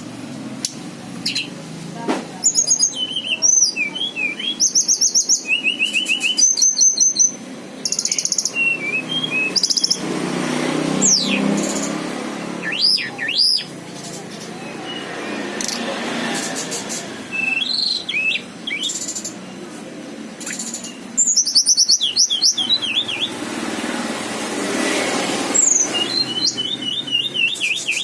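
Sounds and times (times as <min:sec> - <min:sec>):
bird singing trills and whistles: 0:01.2 - 0:01.6, 0:02.4 - 0:10.1, 0:11.0 - 0:12.0, 0:12.6 - 0:19.7, 0:20.4 - 0:23.5, 0:25.5 - 0:28.0.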